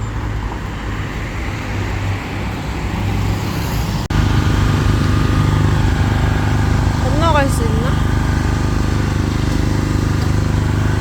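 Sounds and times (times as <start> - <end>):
road traffic rumbling: 0.0 - 11.0
vehicle engine idling hum: 4.1 - 11.0.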